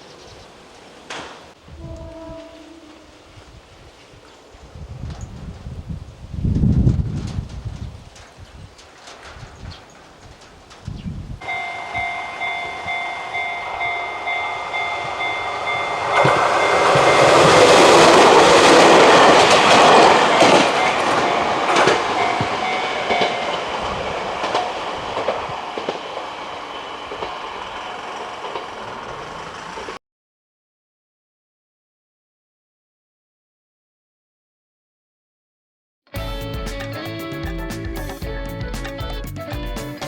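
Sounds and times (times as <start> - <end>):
train wheels rumbling and rattling: 3.3 - 30.0
level crossing alarm clanging: 11.4 - 30.0.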